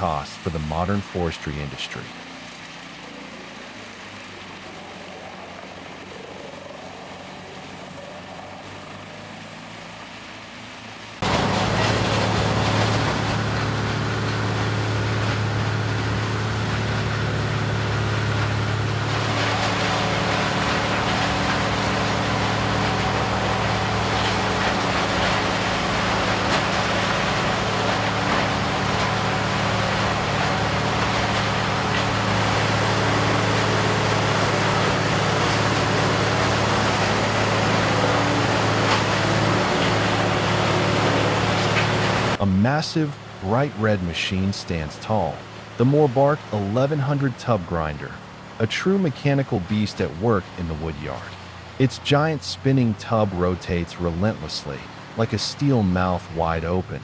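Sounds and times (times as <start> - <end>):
diesel engine running: 0.0 - 57.0
wood grinding and chipping: 11.2 - 42.4.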